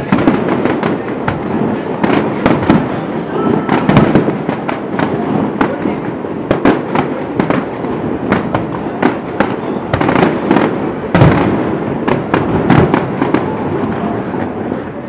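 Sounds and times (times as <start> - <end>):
continuous rumble: 0.0 - 15.0
fireworks bangs and bursts: 0.0 - 15.0.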